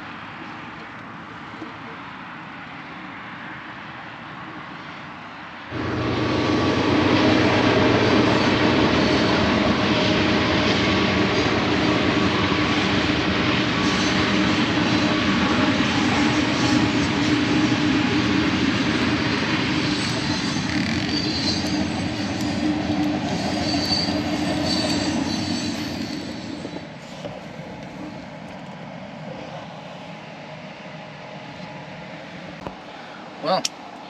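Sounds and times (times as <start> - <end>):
train rumbling on tracks: 5.6 - 34.0
steady background hum: 5.7 - 15.1.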